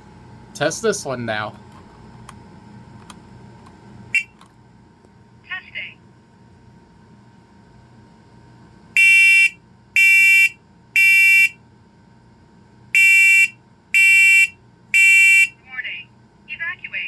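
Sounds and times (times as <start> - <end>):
smoke alarm beeping: 4.2 - 4.4, 9.0 - 11.6, 13.0 - 15.6.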